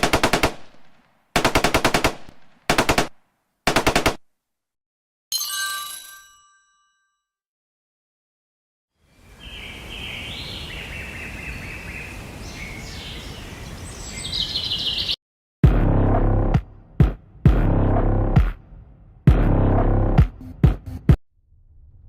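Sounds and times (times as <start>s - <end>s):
bell-like ding ringing: 5.3s - 7.4s
steady outdoor hiss: 9.0s - 14.8s
birds chirping and trilling: 9.1s - 15.2s
music with heavy bass beat: 15.6s - 18.6s, 19.3s - 21.2s.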